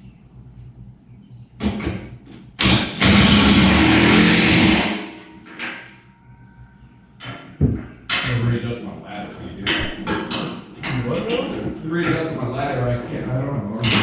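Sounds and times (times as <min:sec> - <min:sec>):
hydraulic power unit running: 0:02.6 - 0:06.0.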